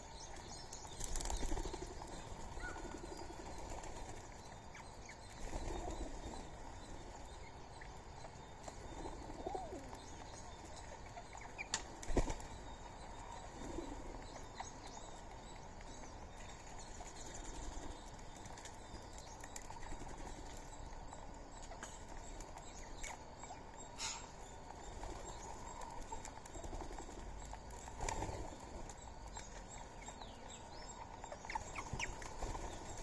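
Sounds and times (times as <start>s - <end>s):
soft bird calls: 0.0s - 33.0s
wings flapping: 11.8s - 12.5s.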